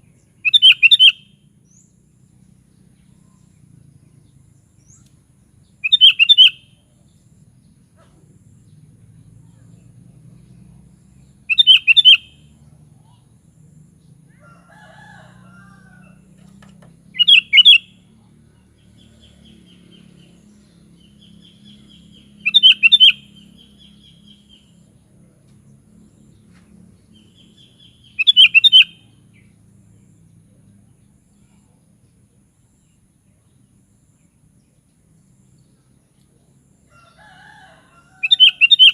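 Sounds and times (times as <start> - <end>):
bird trilling notes: 0.4 - 1.4, 5.8 - 6.7, 11.5 - 12.4, 17.1 - 17.9, 21.4 - 24.6, 27.6 - 29.1, 38.2 - 38.9
bird singing bubbling phrase: 28.2 - 28.9.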